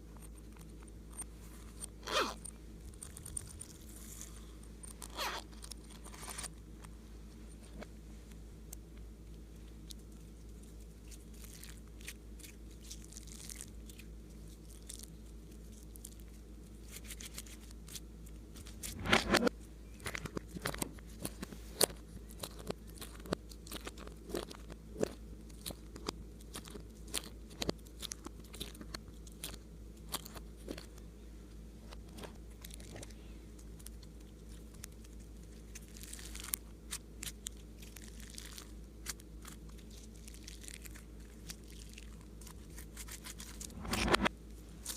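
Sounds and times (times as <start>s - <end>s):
slime crackling and popping: 11.0s - 16.2s, 33.8s - 43.7s.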